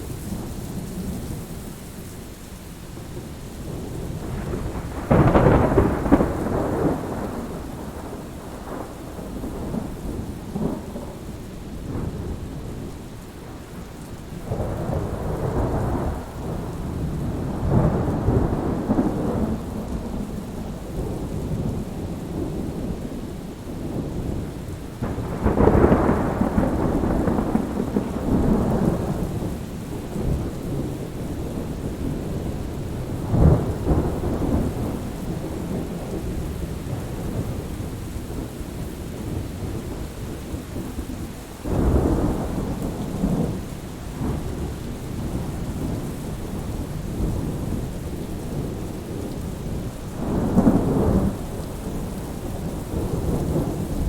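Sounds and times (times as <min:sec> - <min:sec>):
steady rain: 0:00.0 - 0:54.0
thunder rumbling: 0:03.1 - 0:54.0
thunder clap: 0:04.2 - 0:09.9, 0:25.0 - 0:37.7, 0:41.6 - 0:54.0.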